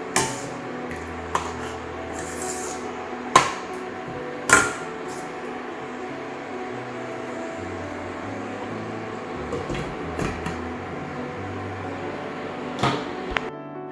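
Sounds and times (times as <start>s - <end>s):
metal cookware clanking: 0.0s - 13.5s.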